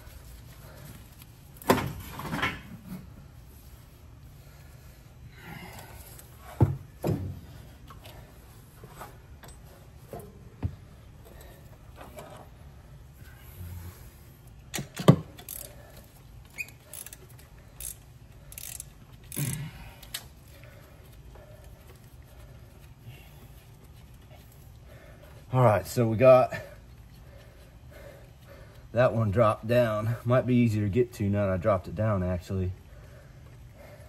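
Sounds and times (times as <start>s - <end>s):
metal clunks and knocks: 6.5s - 7.4s.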